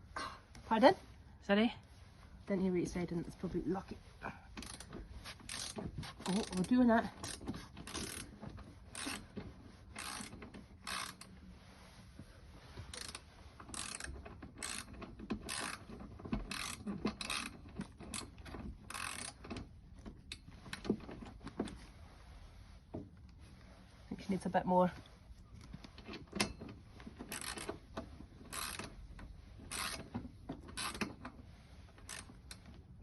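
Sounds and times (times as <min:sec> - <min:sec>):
ratchet wrench clicking: 0:04.6 - 0:05.8, 0:07.2 - 0:08.3, 0:08.9 - 0:09.2, 0:10.0 - 0:11.3, 0:12.9 - 0:15.9, 0:16.5 - 0:19.5, 0:27.3 - 0:27.8, 0:28.5 - 0:28.9, 0:29.7 - 0:30.1, 0:30.8 - 0:31.1, 0:32.0 - 0:32.7.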